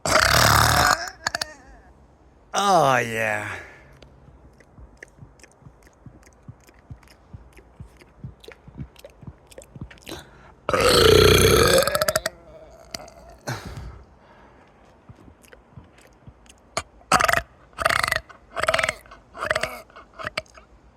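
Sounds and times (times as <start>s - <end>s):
loud long burp: 0.0s - 1.7s, 10.1s - 13.8s
faint mouth clicks: 4.0s - 10.4s, 15.1s - 17.0s, 18.2s - 20.6s.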